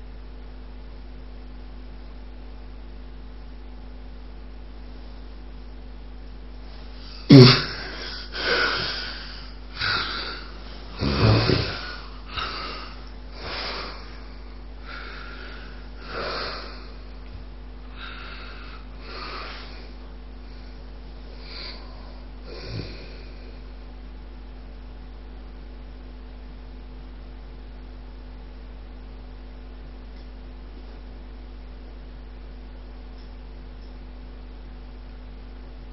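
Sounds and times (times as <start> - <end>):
noisy snoring breaths: 6.9 - 17.2, 17.9 - 23.7
loud snort: 7.0 - 14.2, 14.9 - 17.0, 22.5 - 23.4.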